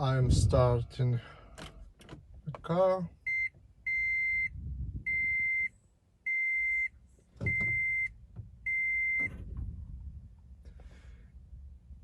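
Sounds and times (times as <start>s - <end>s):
car warning chime beeping: 3.2s - 9.4s.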